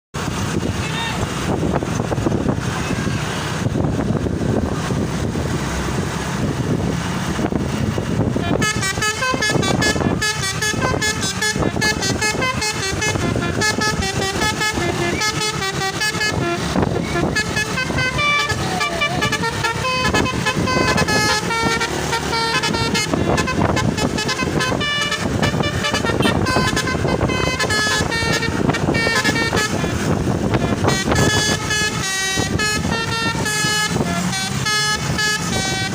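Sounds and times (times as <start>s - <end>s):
bus engine running: 0.1s - 35.9s
multi-tone horn melody: 8.3s - 35.9s.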